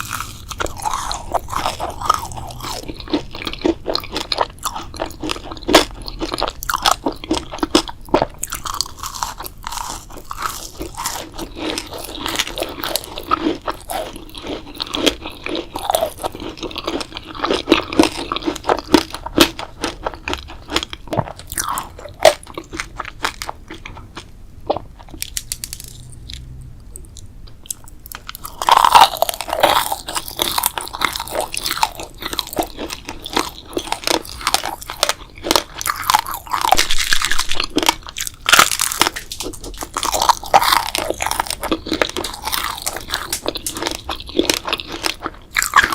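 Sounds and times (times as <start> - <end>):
person chewing crunchy food: 0.0 - 45.9.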